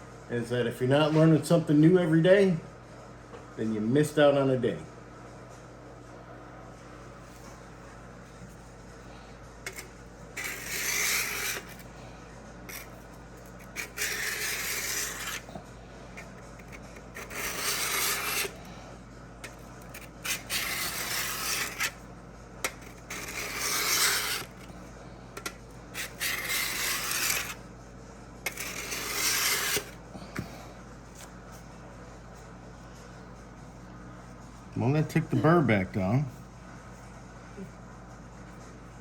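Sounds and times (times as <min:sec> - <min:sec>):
blade scraping sharpening block: 0:09.7 - 0:11.8, 0:12.7 - 0:12.9, 0:13.5 - 0:15.5, 0:16.2 - 0:18.6, 0:19.4 - 0:22.0, 0:22.7 - 0:24.6, 0:25.4 - 0:27.6, 0:28.5 - 0:30.0.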